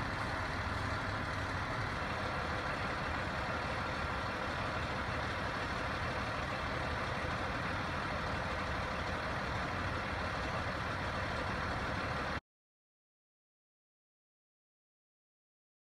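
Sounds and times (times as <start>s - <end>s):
fire truck engine rumbling: 0.0s - 12.4s.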